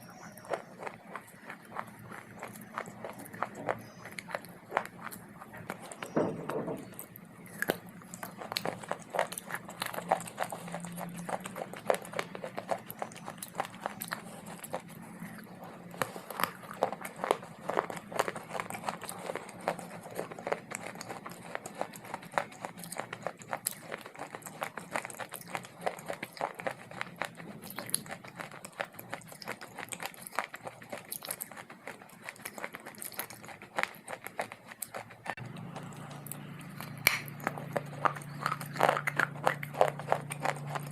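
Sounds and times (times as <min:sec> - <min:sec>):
crunching dry clay: 0:00.0 - 0:40.9
faint low hum: 0:00.0 - 0:40.9.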